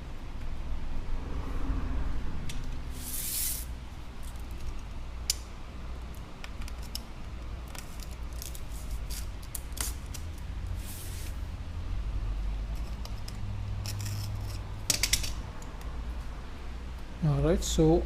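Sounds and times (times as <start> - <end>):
tape hissing rustle: 2.9 - 3.7, 10.8 - 11.4
tape clicks and snips: 4.4 - 10.5, 12.8 - 15.9.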